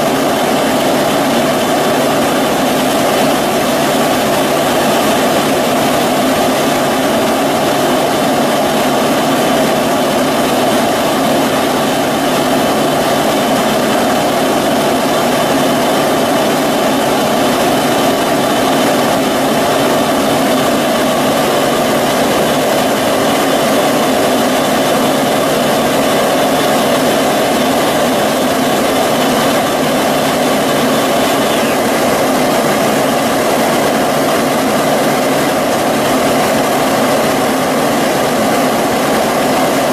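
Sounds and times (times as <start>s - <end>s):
heavy machinery humming: 0.0s - 39.9s
faint high whine: 16.1s - 33.3s.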